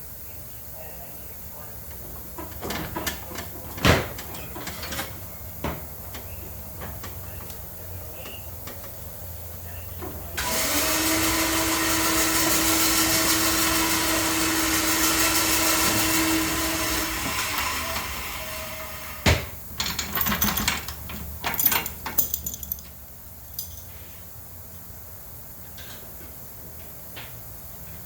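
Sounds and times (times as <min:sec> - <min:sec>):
riding mower engine running: 0:01.9 - 0:19.1.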